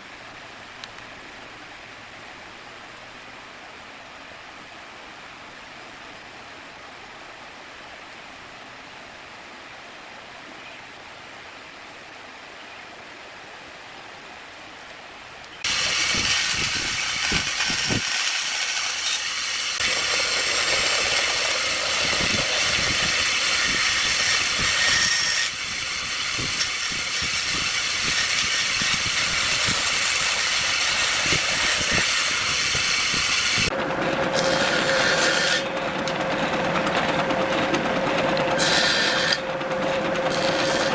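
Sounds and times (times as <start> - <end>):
faint steady hiss: 0.0 - 19.8
power tool working wood: 15.7 - 40.9.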